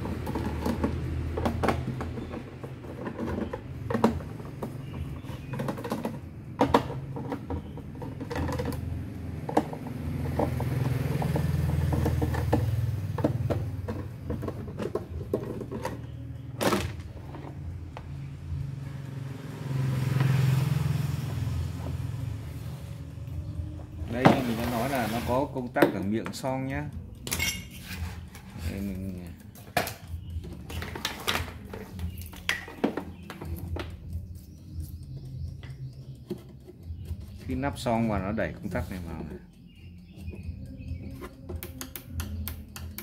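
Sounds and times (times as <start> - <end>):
plastic parts and tools clattering: 0.0 - 17.6, 29.6 - 33.9.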